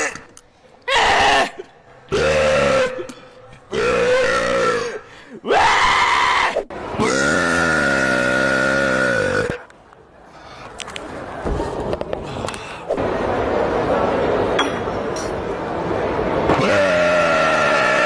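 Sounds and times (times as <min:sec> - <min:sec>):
long loud burp: 0:02.1 - 0:05.1, 0:07.0 - 0:09.7, 0:16.6 - 0:18.0.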